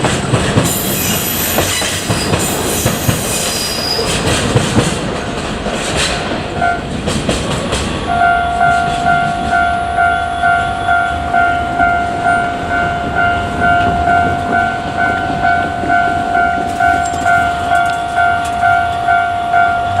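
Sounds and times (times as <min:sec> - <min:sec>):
freight train clattering over rails: 0:00.0 - 0:20.0
level-crossing warning bell ringing: 0:06.6 - 0:06.9, 0:08.0 - 0:20.0.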